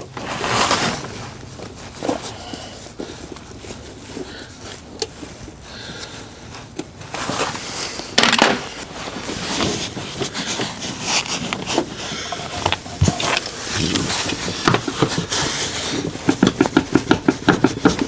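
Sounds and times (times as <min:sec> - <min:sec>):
tool clicks and knocks: 0:08.2 - 0:08.7.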